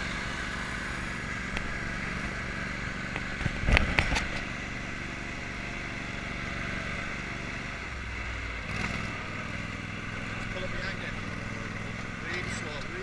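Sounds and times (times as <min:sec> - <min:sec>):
small motorbike engine running: 0:00.0 - 0:08.0, 0:10.4 - 0:13.0.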